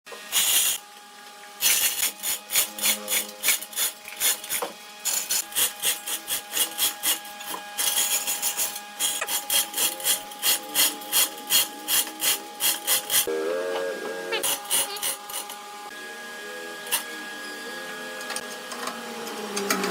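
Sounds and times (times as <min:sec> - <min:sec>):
tool scraping on wood: 0:01.6 - 0:13.3, 0:14.4 - 0:15.6.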